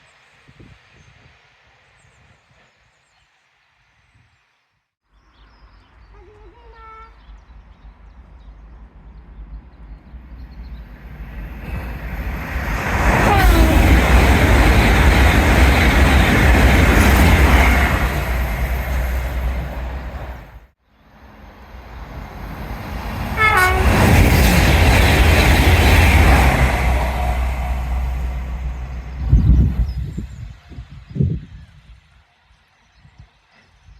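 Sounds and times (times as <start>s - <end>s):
train rushing past: 7.4s - 32.2s
train horn: 13.2s - 14.2s, 23.4s - 24.2s.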